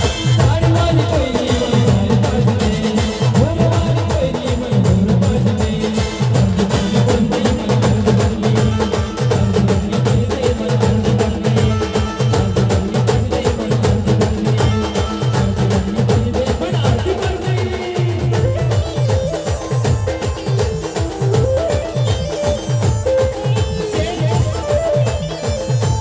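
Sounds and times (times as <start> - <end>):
quick percussion beat: 0.0 - 26.0
village band playing folk music: 0.0 - 26.0.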